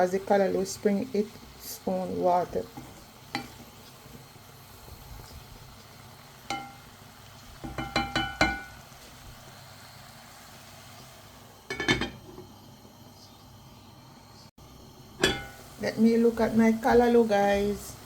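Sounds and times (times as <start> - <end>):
metal cookware clinking: 6.5 - 6.9, 7.6 - 8.8, 11.7 - 12.4, 15.2 - 15.6.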